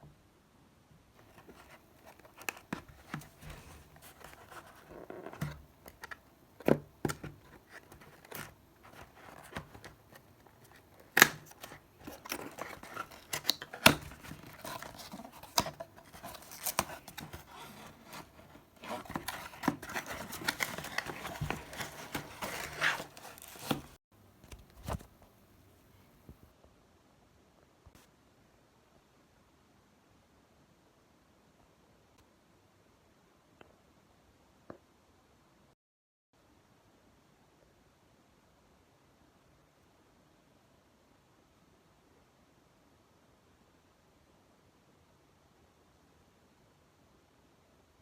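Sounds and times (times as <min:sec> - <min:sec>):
packaging crinkling and tearing: 0:07.1 - 0:24.0.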